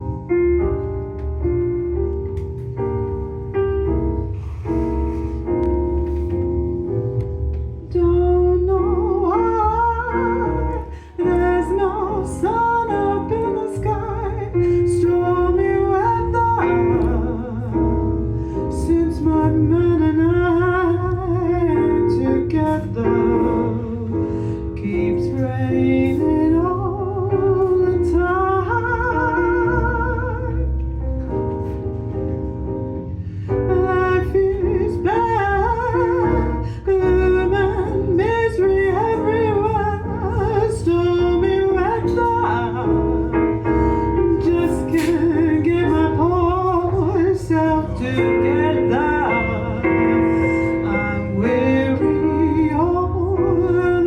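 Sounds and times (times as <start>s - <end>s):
deep bass line: 0.0s - 54.0s
person singing with vibrato: 33.7s - 54.0s.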